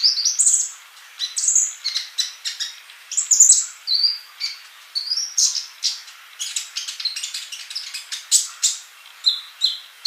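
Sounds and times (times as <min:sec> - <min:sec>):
bird chirping: 0:00.0 - 0:10.0.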